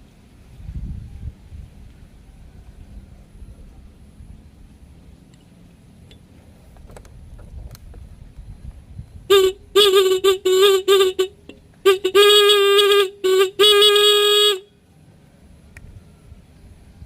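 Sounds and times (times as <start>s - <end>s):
motorcycle horn beeping: 9.2s - 14.8s.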